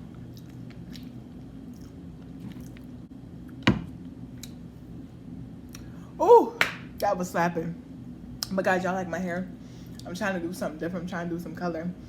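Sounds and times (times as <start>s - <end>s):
person chewing: 0.0s - 3.6s
faint steady hum: 0.0s - 12.0s.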